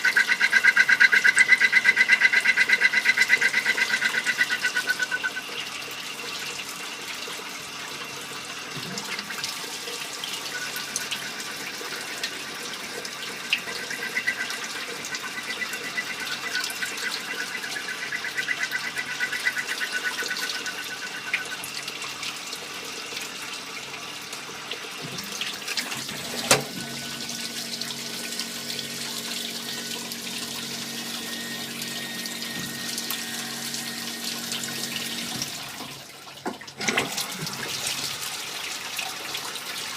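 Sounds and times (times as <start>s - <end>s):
automatic lathe machining: 26.0s - 35.6s.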